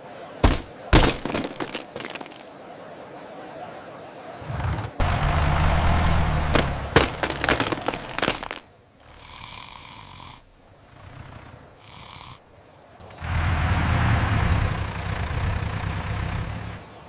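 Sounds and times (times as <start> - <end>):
crashing and clattering knocks: 0.4 - 2.4, 6.4 - 8.6
cartoon snore with whistling exhale: 9.1 - 12.4.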